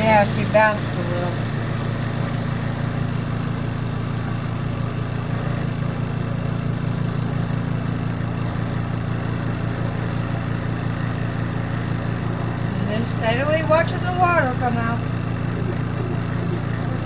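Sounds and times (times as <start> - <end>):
washing machine spin motor humming: 0.0 - 17.0.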